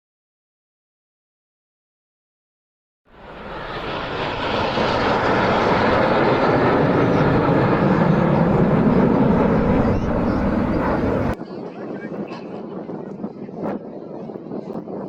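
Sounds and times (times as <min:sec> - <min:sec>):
jet aircraft flying by: 0:03.1 - 0:11.4.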